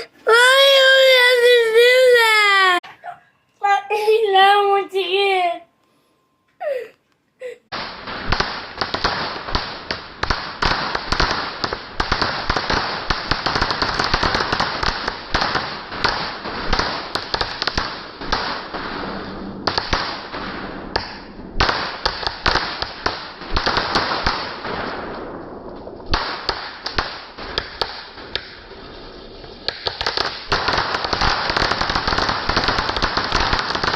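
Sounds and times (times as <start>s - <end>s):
fireworks crackling pops: 7.7s - 33.9s.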